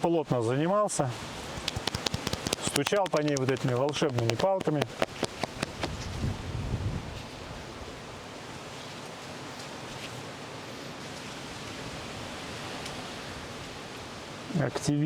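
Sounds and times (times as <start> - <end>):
hands rustling during massage: 1.4 - 6.2.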